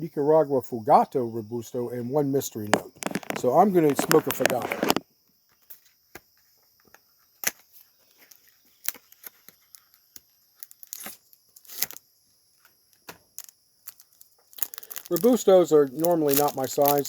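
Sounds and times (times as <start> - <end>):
cellophane wrapper crinkling: 2.7 - 5.0, 8.2 - 12.0, 13.0 - 17.0.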